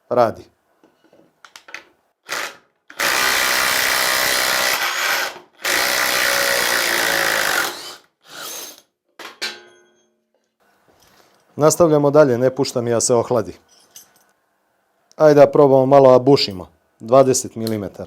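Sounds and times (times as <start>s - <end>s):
impact driver hammering screw: 2.3s - 8.8s.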